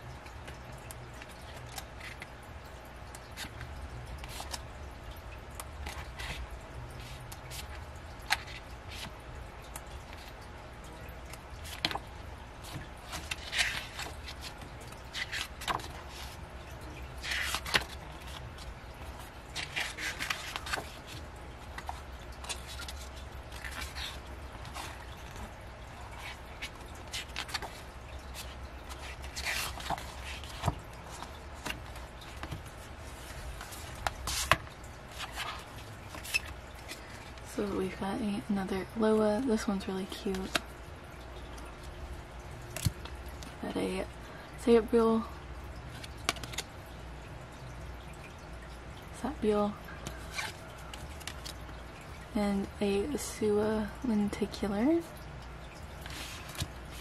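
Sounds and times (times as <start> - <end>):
low steady hum: 0.0 - 57.0
paper and plastic rustling: 11.2 - 37.5, 50.0 - 52.0, 56.0 - 57.0.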